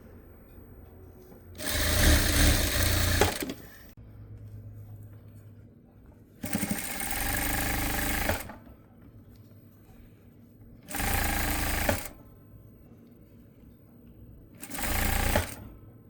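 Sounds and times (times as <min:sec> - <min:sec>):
sewing machine stitching: 0:01.6 - 0:03.9, 0:06.4 - 0:08.6, 0:10.9 - 0:12.2, 0:14.6 - 0:15.6.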